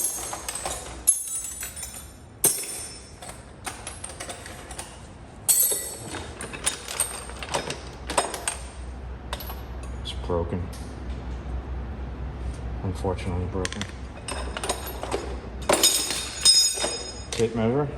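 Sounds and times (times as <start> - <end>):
metal wrenches clinking: 0.0 - 10.0, 14.1 - 17.6.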